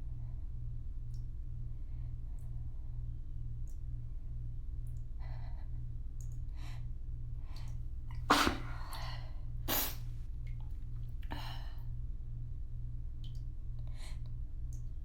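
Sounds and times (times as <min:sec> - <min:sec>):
woman sneezing: 0:08.3 - 0:09.0, 0:09.7 - 0:10.0.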